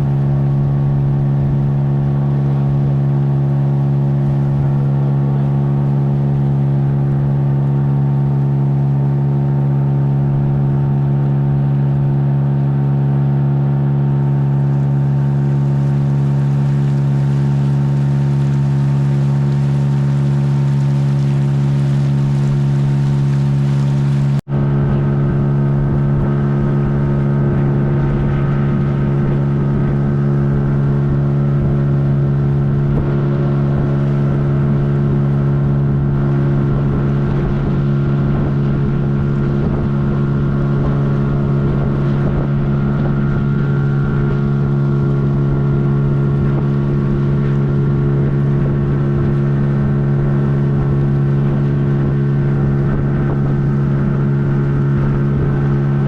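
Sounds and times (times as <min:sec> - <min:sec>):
outboard motor running: 0:00.0 - 0:56.0.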